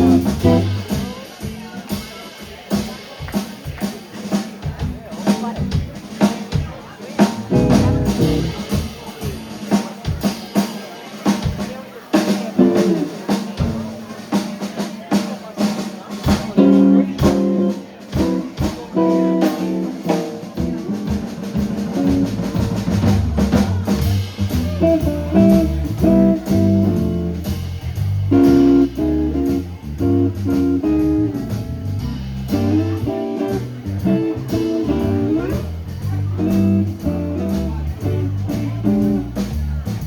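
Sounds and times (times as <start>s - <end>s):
lead guitar picking: 0.0s - 0.8s, 7.5s - 8.5s, 16.6s - 21.3s, 24.8s - 27.4s, 28.3s - 31.9s, 32.5s - 35.8s, 36.4s - 39.3s
bass guitar walking: 0.0s - 1.1s, 7.4s - 9.0s, 16.3s - 40.0s
drums: 0.0s - 40.0s.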